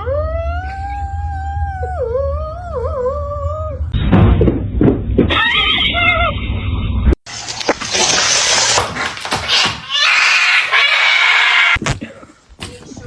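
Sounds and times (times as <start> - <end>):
loud thumps: 4.0 - 5.4
cat yowling: 9.6 - 11.8.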